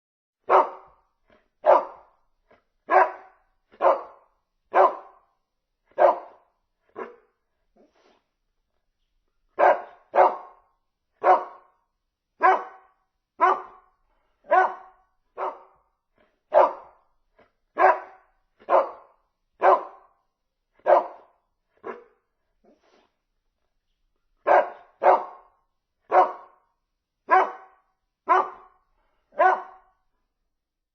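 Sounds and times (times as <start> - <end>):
dog barking: 0.4 - 2.2, 2.8 - 7.3, 9.6 - 11.8, 12.4 - 15.9, 16.5 - 17.1, 17.7 - 20.2, 20.8 - 22.2, 24.4 - 30.1.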